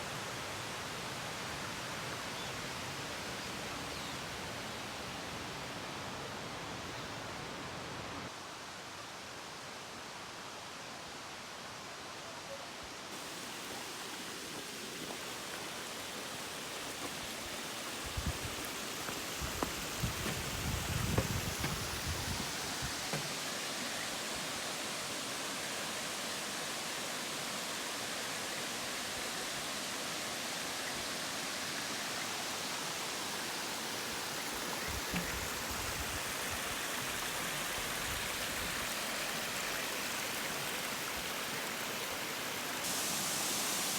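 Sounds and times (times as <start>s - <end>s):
rushing water hiss: 0.0s - 43.9s
low knocks and thumps: 18.1s - 23.4s.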